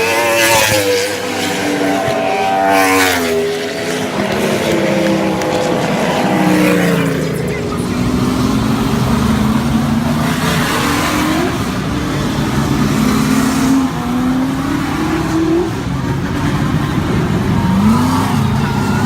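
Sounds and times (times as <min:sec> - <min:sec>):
race car engines: 0:00.0 - 0:19.0.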